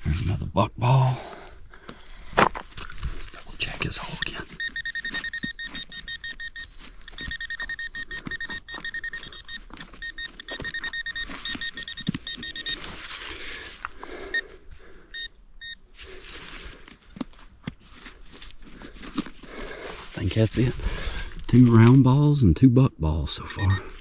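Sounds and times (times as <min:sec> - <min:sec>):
digging in dirt: 0:01.4 - 0:15.1, 0:15.7 - 0:22.1
soil rustling: 0:01.8 - 0:15.0, 0:15.9 - 0:22.2
metal detector beeping: 0:03.9 - 0:13.2, 0:14.3 - 0:14.5, 0:15.1 - 0:15.8, 0:23.4 - 0:24.0.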